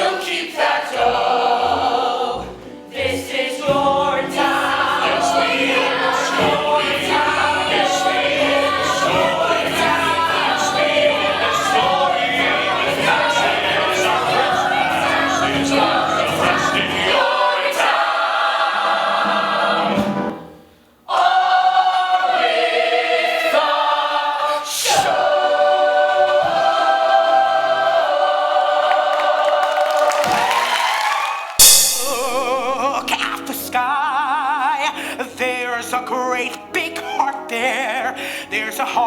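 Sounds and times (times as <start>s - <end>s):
ensemble singing in chorus: 0.0s - 30.6s
loud hit: 31.6s - 33.2s.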